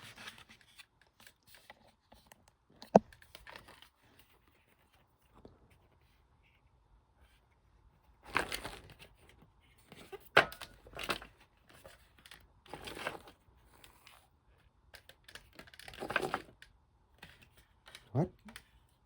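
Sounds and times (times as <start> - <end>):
rustling and crinkling: 0.0 - 19.0.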